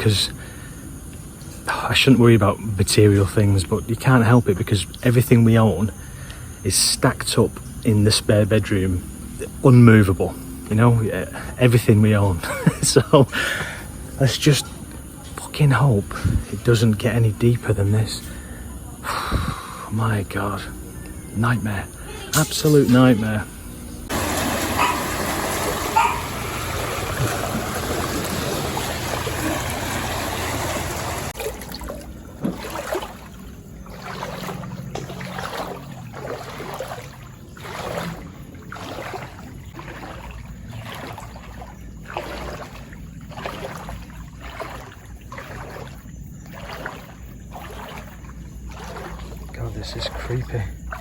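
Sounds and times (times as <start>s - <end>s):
splashing steps in water: 24.1s - 51.0s.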